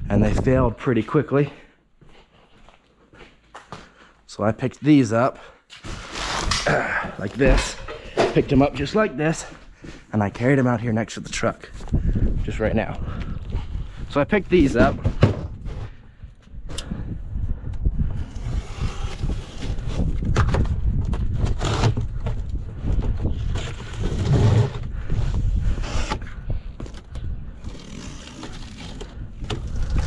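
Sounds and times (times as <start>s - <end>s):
wind rumbling on microphone: 0.0s - 0.8s, 11.7s - 30.0s
parts scraping and knocking: 5.8s - 8.6s.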